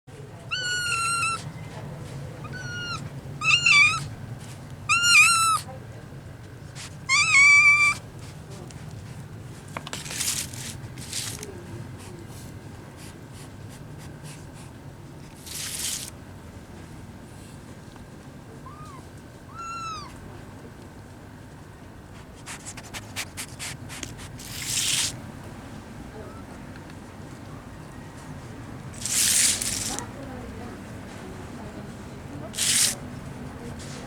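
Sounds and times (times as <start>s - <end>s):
kitten meowing: 0.5s - 1.5s, 2.4s - 4.1s, 4.9s - 5.7s, 6.8s - 8.0s, 18.6s - 20.2s.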